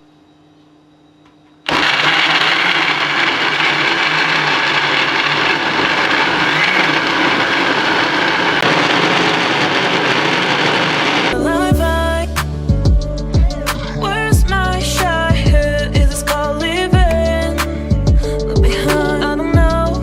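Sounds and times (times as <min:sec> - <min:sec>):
electric blender running: 0:01.7 - 0:11.4
music: 0:11.4 - 0:20.0.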